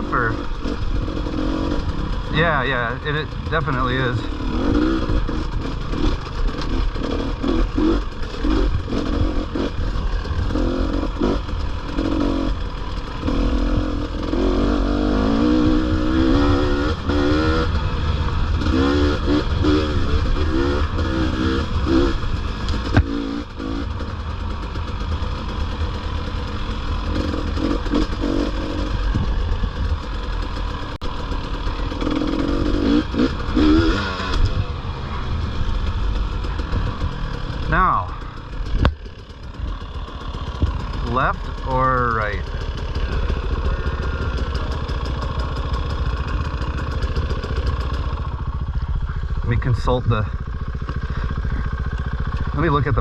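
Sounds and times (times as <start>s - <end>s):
dirt bike engine revving: 0.0s - 53.0s.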